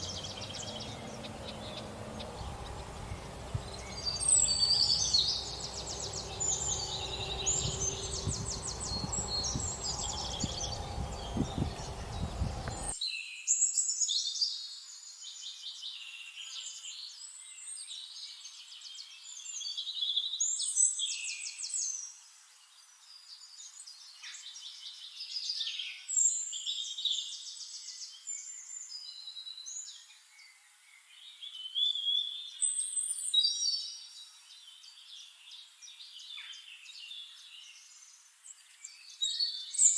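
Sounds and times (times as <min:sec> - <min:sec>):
low background rumble: 0:00.0 - 0:13.0
songbirds chirping and singing: 0:00.0 - 0:13.0.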